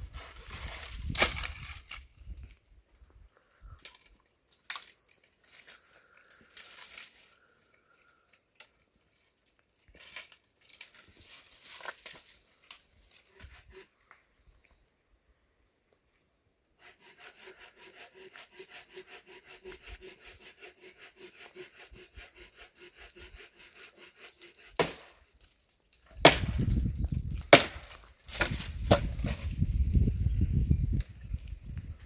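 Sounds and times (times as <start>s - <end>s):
saw cutting through wood: 13.1s - 13.9s, 16.8s - 26.8s, 27.5s - 29.4s
axe chopping firewood: 24.7s - 25.2s, 26.1s - 29.6s.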